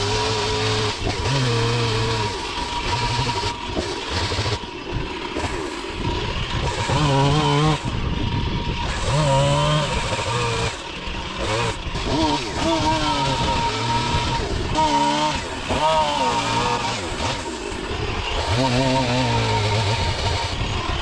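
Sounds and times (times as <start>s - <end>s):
chainsaw cutting wood: 0.0s - 21.0s.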